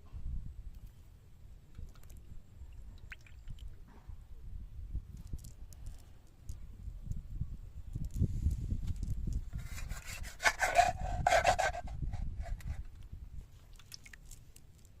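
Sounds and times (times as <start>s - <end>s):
rubbing scraping strokes: 9.5s - 12.8s.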